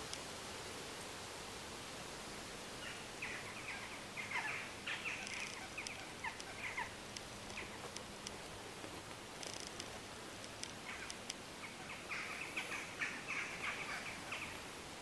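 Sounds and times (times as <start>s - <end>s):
thin high bird ticks: 0.0s - 0.2s, 4.3s - 14.5s
steady background hiss: 0.0s - 15.0s
small birds chirping: 2.8s - 14.7s.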